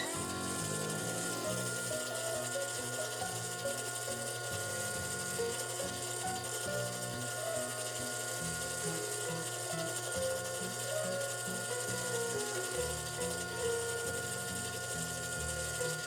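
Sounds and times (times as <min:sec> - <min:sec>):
toy microwave clicking whir: 0:00.0 - 0:16.0.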